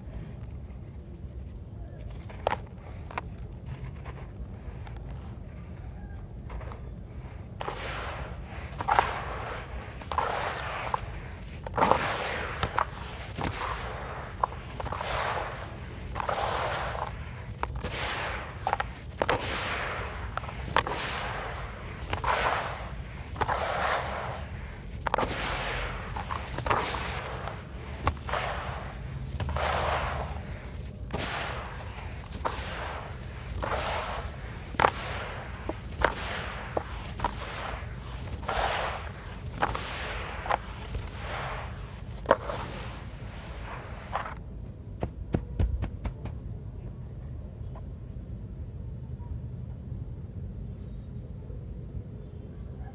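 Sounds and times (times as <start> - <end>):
low hum: 6.8 - 43.6
gritty crumbling rush: 7.3 - 44.4
sand-cement chunks cracking in water: 7.6 - 44.4.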